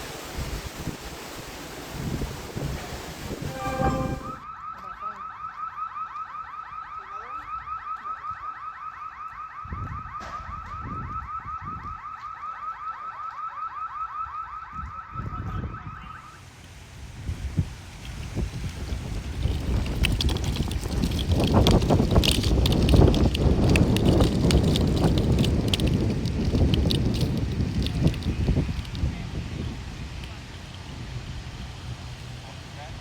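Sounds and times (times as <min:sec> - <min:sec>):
wind on microphone: 0:00.0 - 0:04.4, 0:17.0 - 0:32.4.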